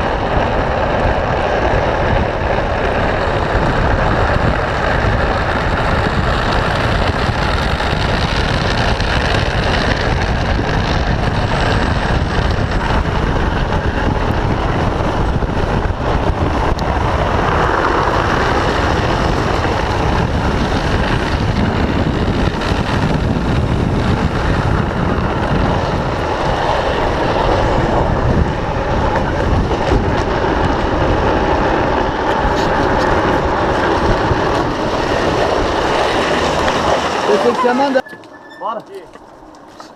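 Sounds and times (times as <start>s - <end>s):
wind on microphone: 0.0s - 38.1s
trike wheels scraping on asphalt: 0.0s - 39.9s.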